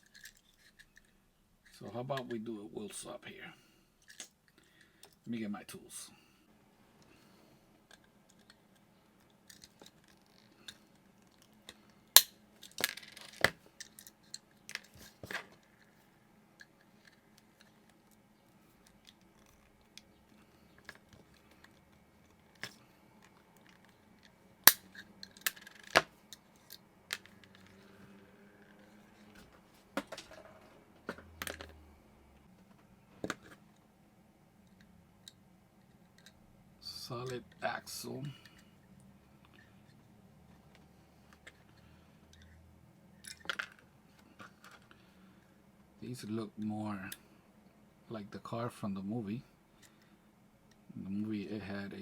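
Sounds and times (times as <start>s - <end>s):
clicks and knocks of small tools: 0.0s - 2.4s, 7.8s - 16.0s.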